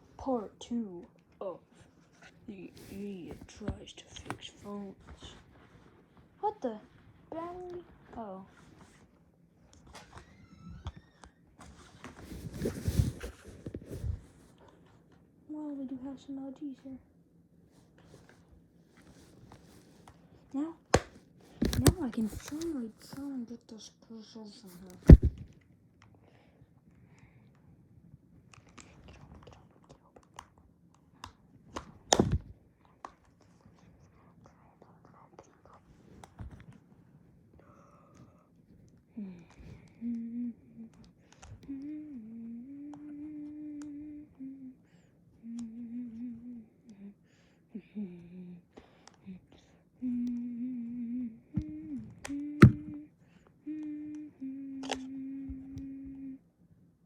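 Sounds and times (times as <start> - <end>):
mobile phone being handled: 20.9 - 23.2, 24.8 - 25.5, 51.7 - 53.0
person humming: 40.0 - 41.0, 41.6 - 44.8, 45.4 - 47.2, 50.0 - 56.4.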